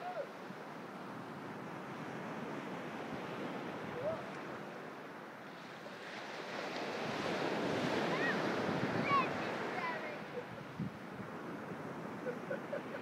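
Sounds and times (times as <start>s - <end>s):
sea waves washing onto beach: 0.0s - 13.0s
wind buffeting microphone: 6.0s - 12.3s.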